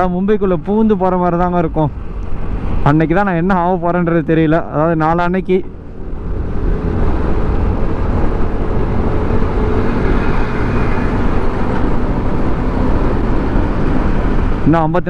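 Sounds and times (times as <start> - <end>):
road noise: 0.0 - 15.0
rushing wind: 0.0 - 15.0
scooter engine: 6.0 - 14.5.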